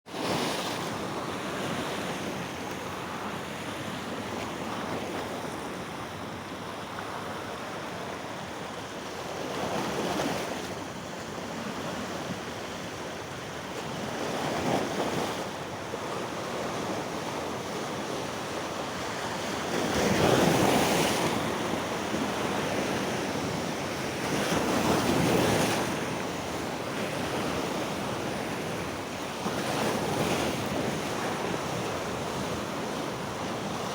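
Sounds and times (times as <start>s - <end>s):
ocean surf on beach: 0.1s - 33.9s
waves breaking: 13.8s - 33.9s.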